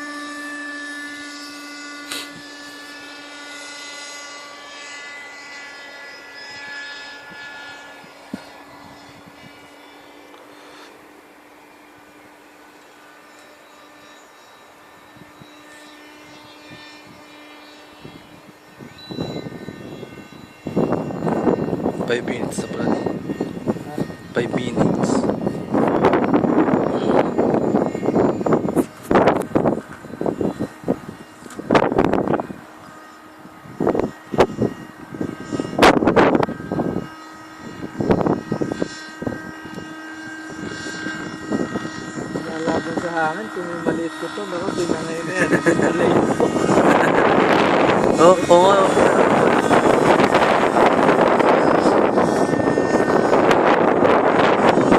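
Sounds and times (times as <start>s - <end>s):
rc helicopter engine whining: 0.0s - 54.9s
wind buffeting microphone: 4.9s - 10.3s, 14.8s - 54.9s.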